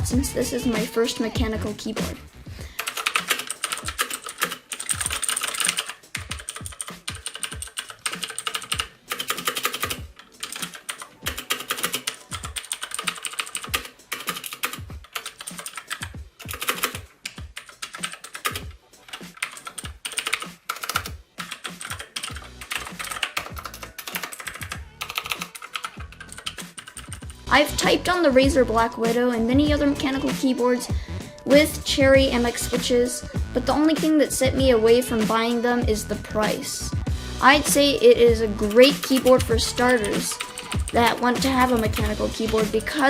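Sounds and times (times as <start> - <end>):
mechanical keyboard typing: 2.8 - 27.3, 38.7 - 43.0.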